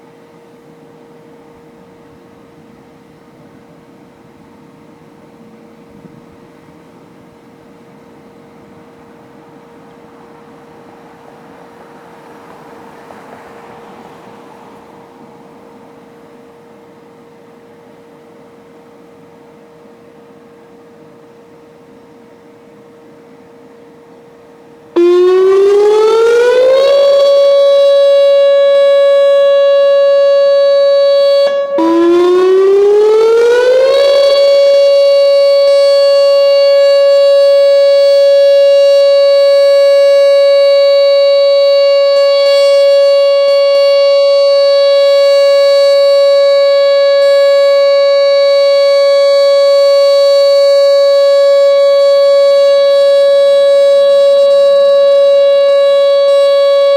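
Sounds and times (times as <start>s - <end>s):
electronic warning siren: 25.0s - 56.9s.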